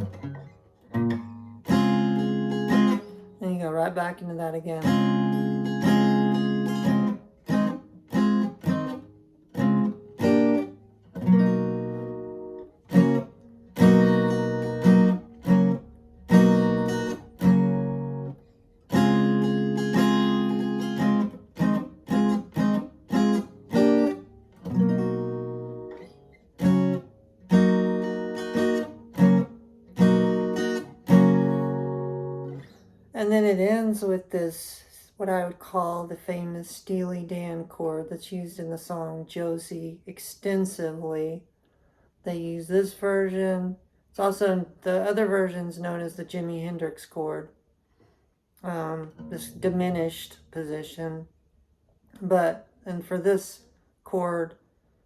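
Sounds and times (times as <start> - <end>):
guitar strumming chords: 0.0 - 32.8, 49.0 - 51.0.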